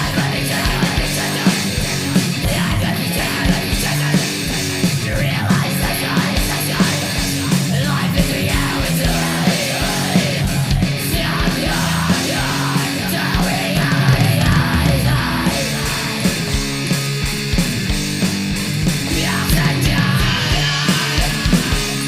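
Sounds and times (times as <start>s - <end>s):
bass guitar riffing: 0.0s - 22.0s
distorted electric guitar riffing: 0.0s - 22.0s
fast pounding drums: 0.0s - 22.0s.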